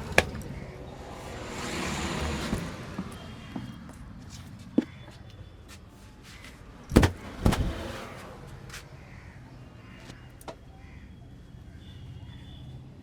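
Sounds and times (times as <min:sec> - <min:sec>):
sharp smacks: 0:06.9 - 0:07.9.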